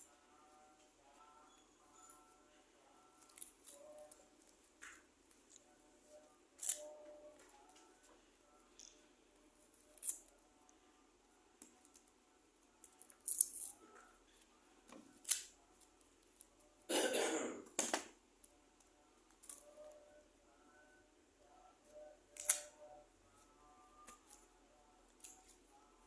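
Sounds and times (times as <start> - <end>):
person coughing: 16.9 - 17.7.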